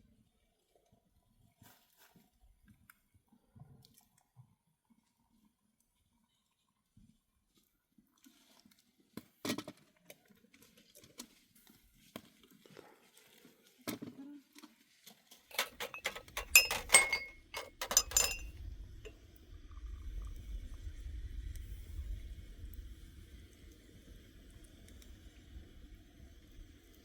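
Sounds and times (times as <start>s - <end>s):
ringing clinks of dishes: 15.5s - 18.5s
small knocks and clicks: 15.5s - 18.5s.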